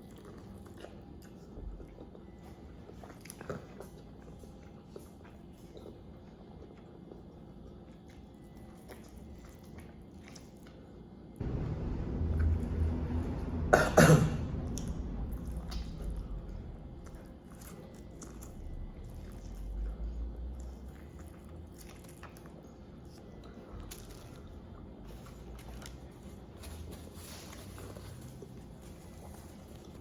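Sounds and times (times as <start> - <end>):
low rumble: 11.4 - 20.8
person coughing: 13.6 - 14.7
clicks of eating and handling: 14.8 - 30.0.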